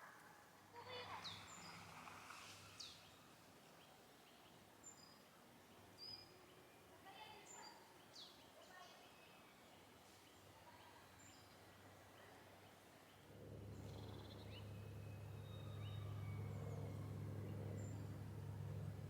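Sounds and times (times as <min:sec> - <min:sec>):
vehicle engine rumble: 0:13.3 - 0:19.0
bird chirps: 0:13.8 - 0:17.0.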